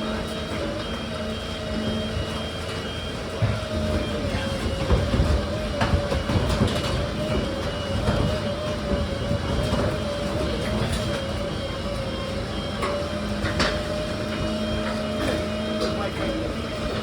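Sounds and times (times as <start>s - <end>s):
machine whining and rumbling: 0.0s - 17.0s.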